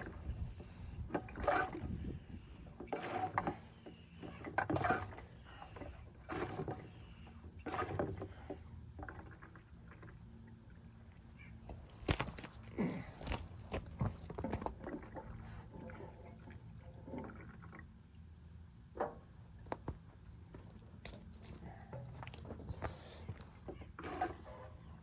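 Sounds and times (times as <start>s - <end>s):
hand fuel pump strokes: 0.0s - 9.6s, 21.6s - 24.6s.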